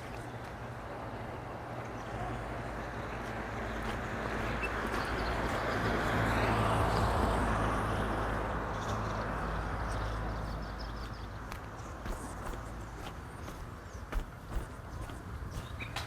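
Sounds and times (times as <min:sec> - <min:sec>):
vehicle passing by: 0:03.4 - 0:15.8.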